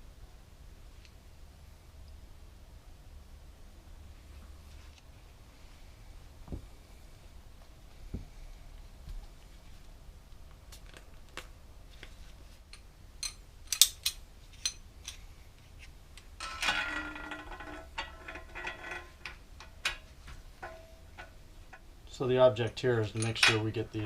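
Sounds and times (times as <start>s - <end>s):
metal parts clattering: 16.4s - 21.8s, 22.7s - 24.0s.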